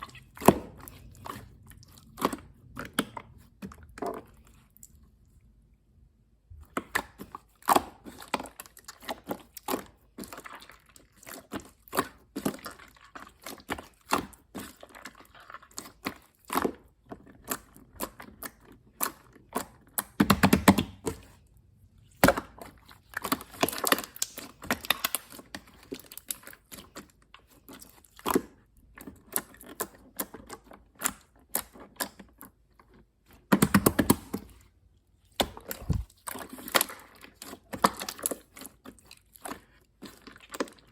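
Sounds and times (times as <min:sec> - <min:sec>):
slime crackling: 0:35.3 - 0:40.9.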